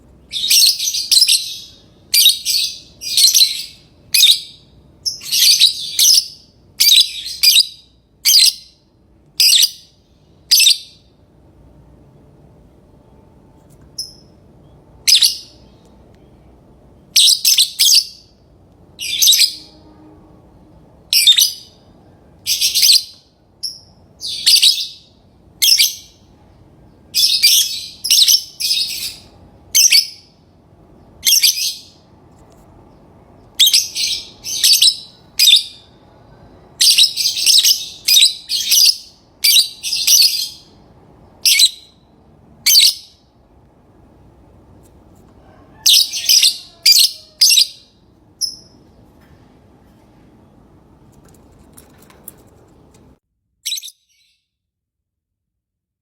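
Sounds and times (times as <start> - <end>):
birds chirping shrilly: 45.8 - 48.8.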